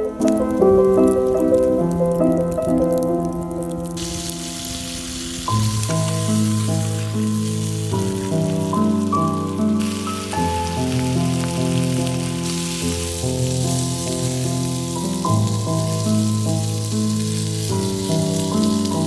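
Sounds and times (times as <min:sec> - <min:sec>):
crackling hiss of fire: 0:00.0 - 0:19.0
slow sustained chords music: 0:00.0 - 0:19.0.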